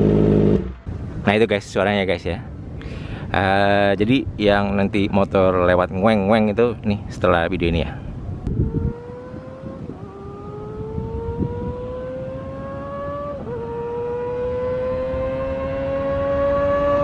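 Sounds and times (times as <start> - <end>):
motorcycle engine accelerating hard: 0.0 - 0.9, 8.4 - 17.0.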